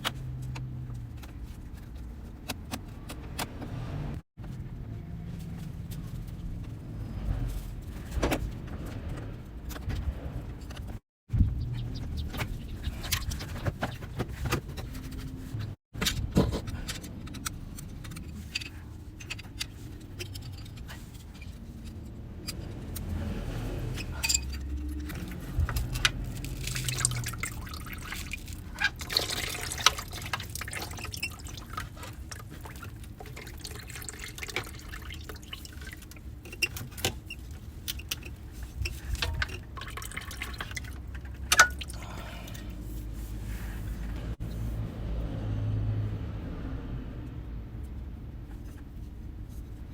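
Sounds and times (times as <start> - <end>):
liquid dripping and pouring: 26.2 - 36.3, 39.4 - 42.2.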